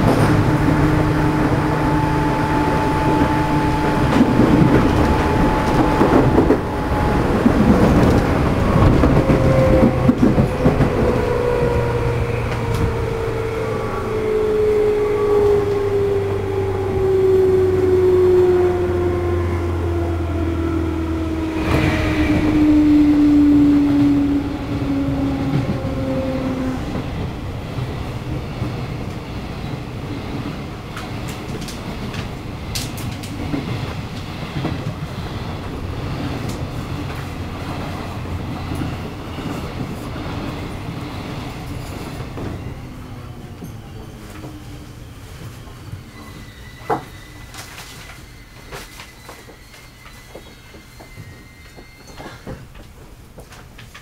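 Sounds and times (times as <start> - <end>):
train motor whining: 0.0 - 27.9.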